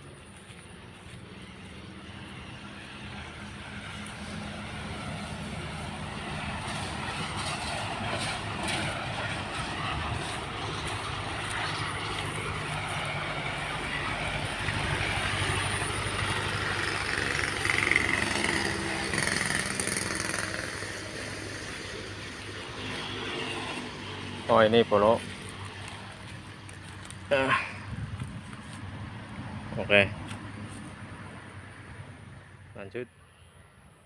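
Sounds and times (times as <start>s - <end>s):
vehicle engine humming: 0.0s - 32.8s
wind and road noise: 0.0s - 34.0s.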